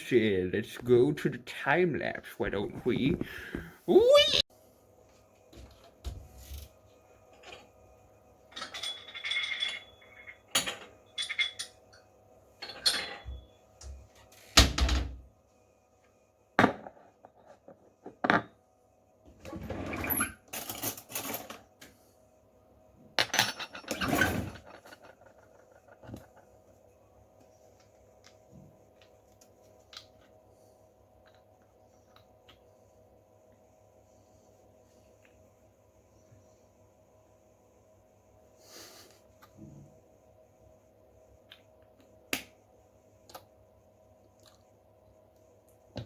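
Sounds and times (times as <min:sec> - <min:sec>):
faint steady hum: 0:00.0 - 0:46.0
dishes and utensils clattering: 0:08.5 - 0:11.8, 0:12.6 - 0:13.4, 0:23.2 - 0:26.4.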